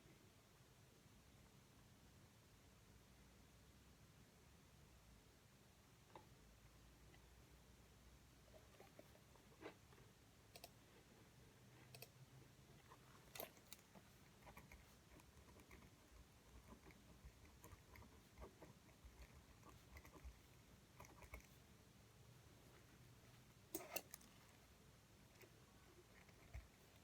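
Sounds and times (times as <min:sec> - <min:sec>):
faint small clicks and taps: 0:06.1 - 0:06.4.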